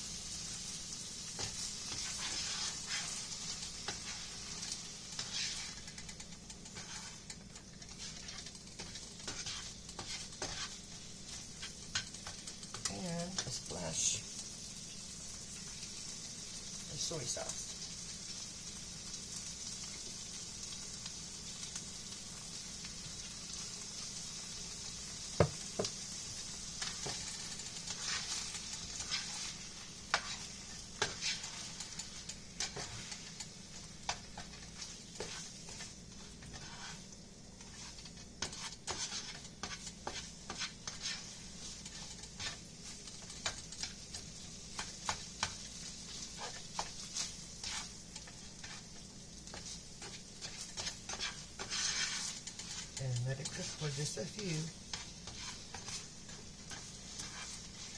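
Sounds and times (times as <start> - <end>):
rice sizzling in a frying pan: 0.0 - 57.9
utensil scraping a pan: 1.4 - 14.1, 26.8 - 57.9.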